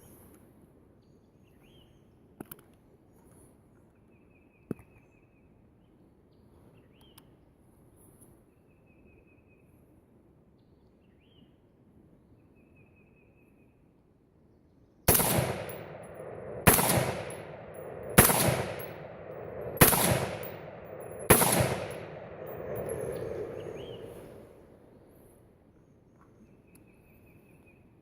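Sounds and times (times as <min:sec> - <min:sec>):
rifle shots echoing: 0:15.1 - 0:24.8.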